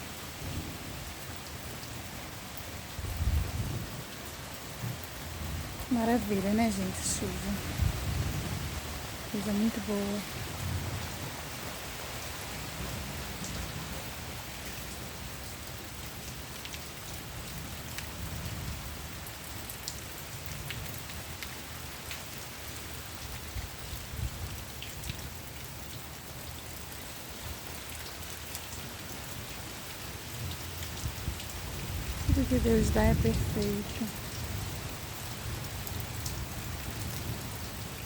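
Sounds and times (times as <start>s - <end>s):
steady rain hiss: 0.0s - 38.0s
rain drop ticks: 13.4s - 13.7s, 14.6s - 18.7s.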